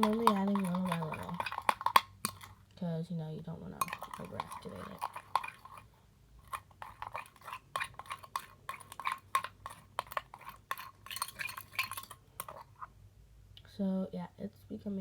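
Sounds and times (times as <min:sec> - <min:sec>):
spoon clinking and scraping container: 0:00.0 - 0:02.6, 0:03.8 - 0:12.9.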